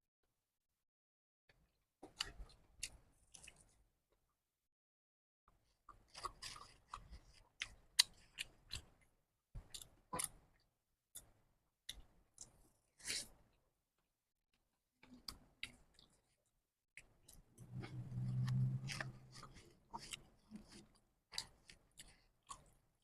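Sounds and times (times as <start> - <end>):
person chewing noodles: 2.1 - 3.8, 5.7 - 10.6, 15.0 - 16.4, 17.0 - 22.9.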